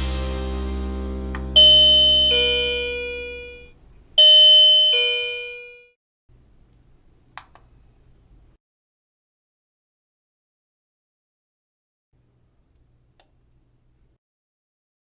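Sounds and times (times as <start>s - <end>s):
doorbell chiming ding-dong: 1.6s - 5.9s.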